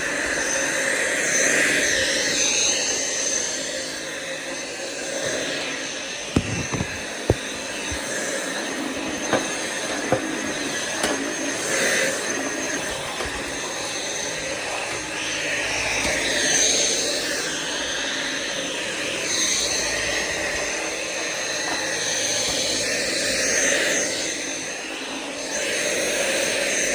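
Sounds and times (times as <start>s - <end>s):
vacuum cleaner running: 5.0s - 17.4s.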